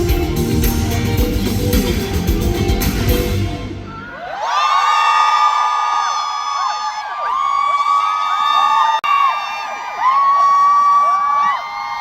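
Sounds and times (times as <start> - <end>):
drum kit: 0.0 - 3.8
guitar: 0.0 - 3.9.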